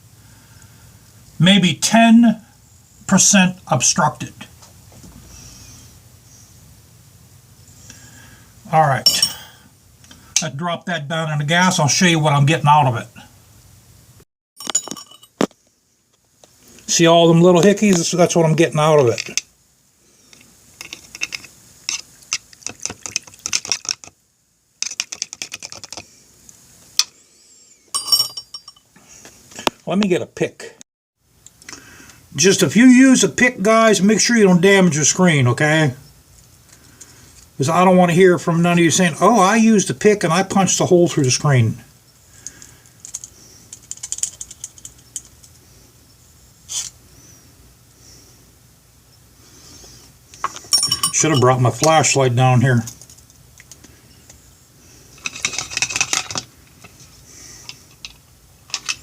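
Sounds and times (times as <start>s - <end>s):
small hard objects clicking: 20.3s - 24.2s, 24.8s - 26.1s, 42.4s - 45.6s, 52.9s - 54.0s
short hiss: 46.7s - 47.4s.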